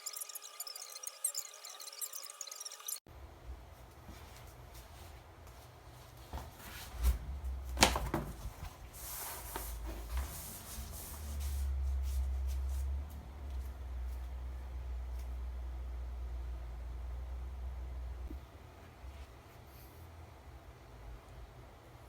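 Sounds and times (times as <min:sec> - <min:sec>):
low steady hum: 0:03.1 - 0:22.0
rustling: 0:03.8 - 0:14.3.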